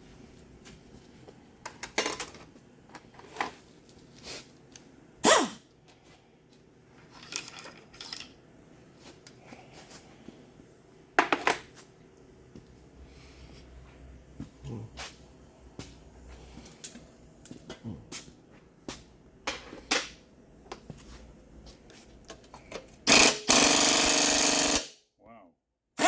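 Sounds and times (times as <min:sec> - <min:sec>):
metal parts clinking and clanking: 0:01.7 - 0:02.5, 0:07.1 - 0:08.4.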